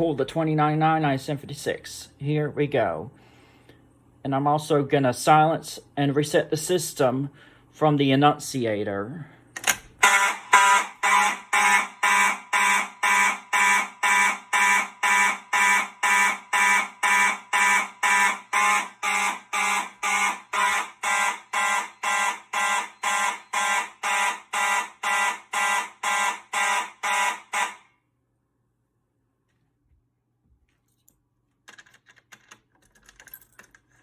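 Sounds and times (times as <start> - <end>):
fire alarm horns blasting: 10.0 - 28.1.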